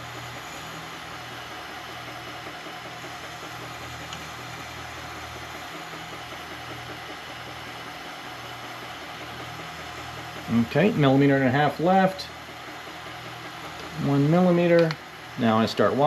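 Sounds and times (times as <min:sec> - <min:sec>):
milling machine spindle running: 0:00.0 - 0:16.0.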